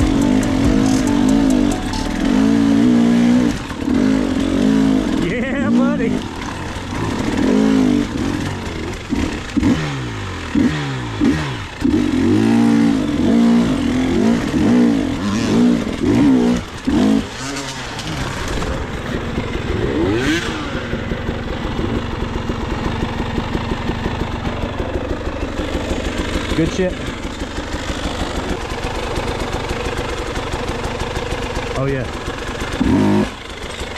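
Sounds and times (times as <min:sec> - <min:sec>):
dirt bike engine revving: 0:00.0 - 0:24.7, 0:32.5 - 0:33.9.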